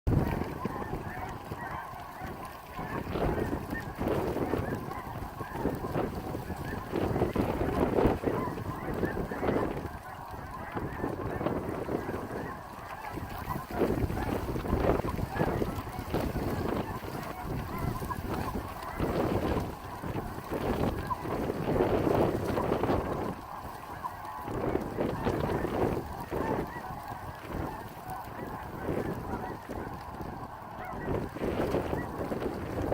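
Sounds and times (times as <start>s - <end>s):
geese honking: 0.1s - 32.9s
wind buffeting microphone: 0.1s - 32.9s.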